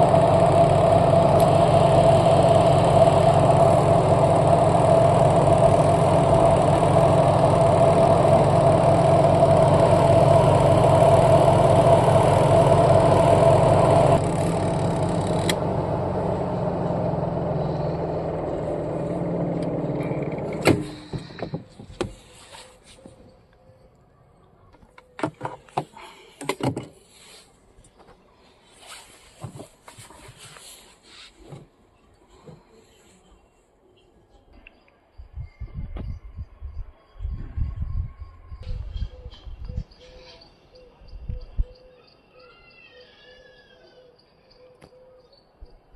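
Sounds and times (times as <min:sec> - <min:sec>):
washing machine motor hum: 0:00.0 - 0:21.6.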